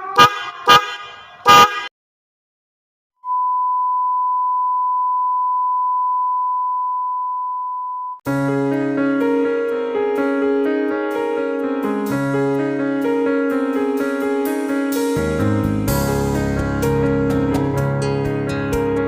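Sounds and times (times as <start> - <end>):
car horn blast: 0.2 - 1.9
piano music: 8.3 - 19.0.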